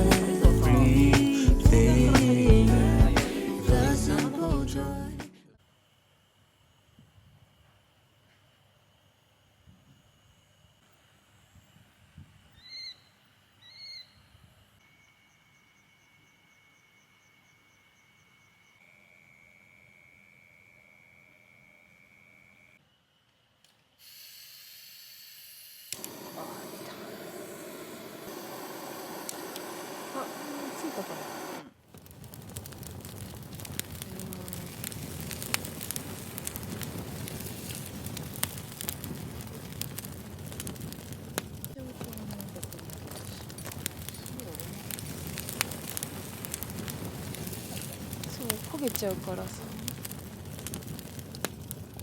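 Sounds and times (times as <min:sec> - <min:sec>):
fire crackling and popping: 0:00.0 - 0:05.1, 0:25.9 - 0:52.0
bird whistled call: 0:12.6 - 0:14.3.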